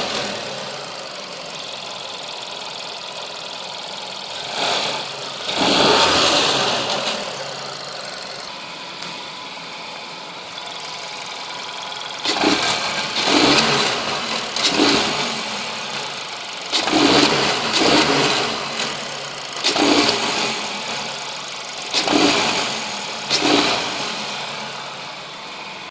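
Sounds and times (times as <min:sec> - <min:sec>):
car engine idling and revving: 0:00.0 - 0:25.9.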